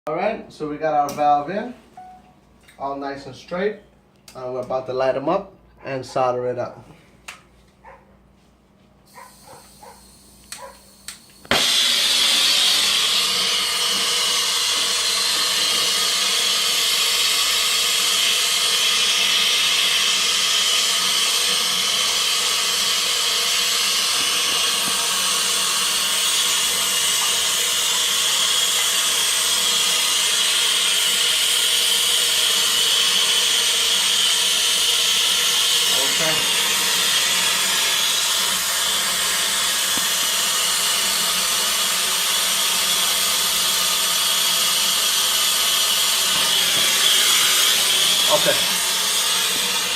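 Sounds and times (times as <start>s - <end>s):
torch flame hissing: 9.1s - 49.9s
torch igniter clicks: 10.4s - 16.1s, 39.8s - 40.2s.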